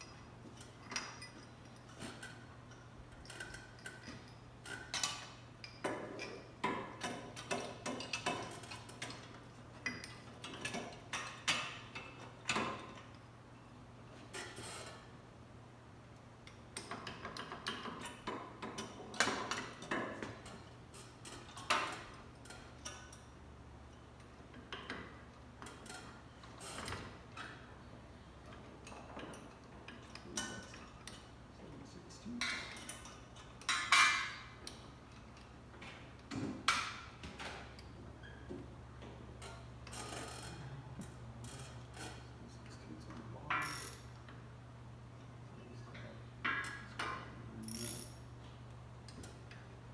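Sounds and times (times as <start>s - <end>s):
metal tools clicking and clinking: 0.0s - 13.2s, 32.4s - 35.5s, 43.5s - 44.2s, 46.4s - 48.3s
shop fan humming: 0.1s - 49.9s.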